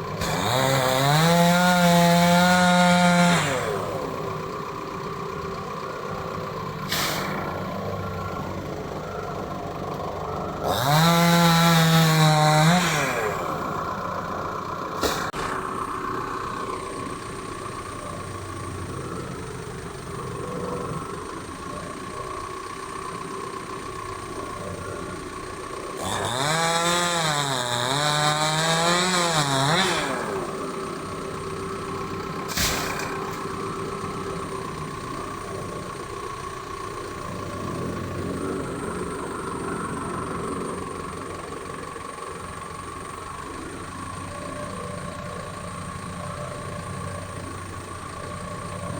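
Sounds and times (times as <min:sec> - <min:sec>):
chainsaw revving into wood: 0:00.0 - 0:04.5, 0:10.6 - 0:14.2, 0:25.9 - 0:34.1
engine running steadily: 0:00.0 - 0:48.9.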